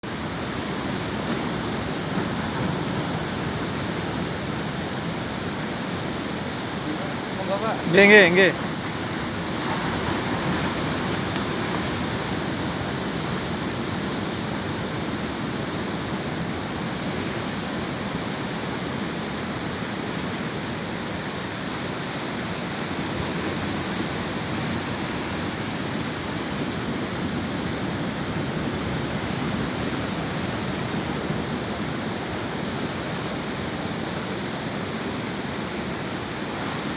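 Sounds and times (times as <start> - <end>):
ocean waves washing on beach: 0.0 - 36.9.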